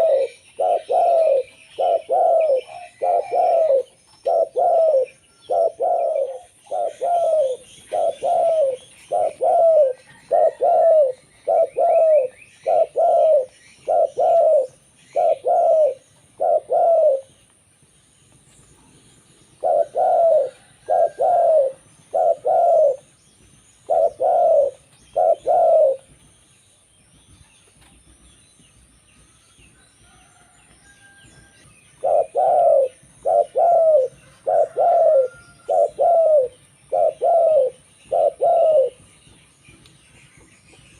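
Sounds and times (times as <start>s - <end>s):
dove cooing: 0.0s - 17.4s, 19.6s - 23.1s, 23.8s - 26.2s, 32.0s - 39.1s.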